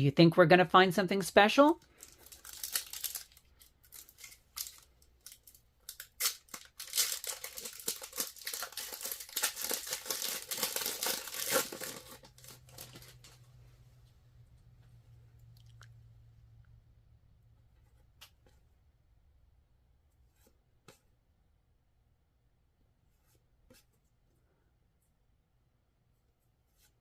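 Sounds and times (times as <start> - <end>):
wrapper tearing and crinkling: 1.9 - 13.4.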